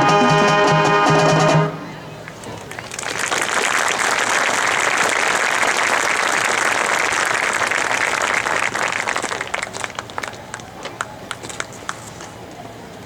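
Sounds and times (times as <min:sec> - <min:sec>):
crowd applauding and cheering: 0:02.2 - 0:12.0.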